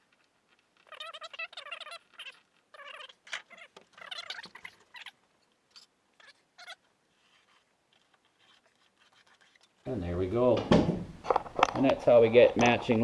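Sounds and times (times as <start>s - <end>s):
marking tool squeaking: 0.0s - 10.0s.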